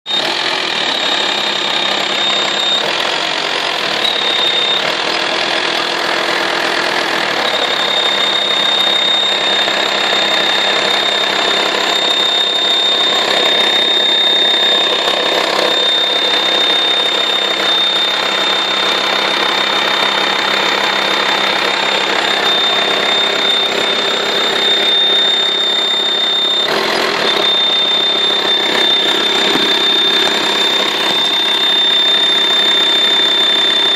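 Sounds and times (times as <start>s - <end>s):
high-pitched whistle: 0.1s - 5.1s, 7.4s - 33.9s
diesel engine idling: 0.1s - 33.9s.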